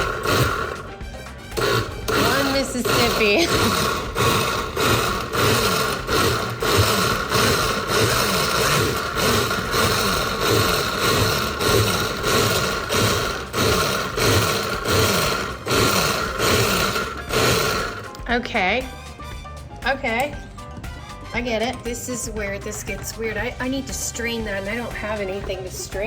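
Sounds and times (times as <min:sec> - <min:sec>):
blender motor whine pulsing: 0:00.0 - 0:18.2.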